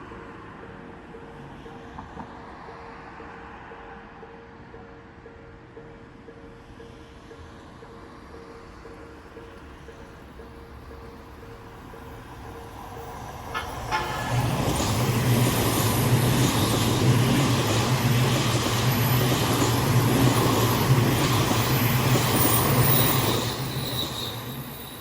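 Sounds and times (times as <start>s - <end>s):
train wheels rumbling on rail: 7.5s - 25.0s.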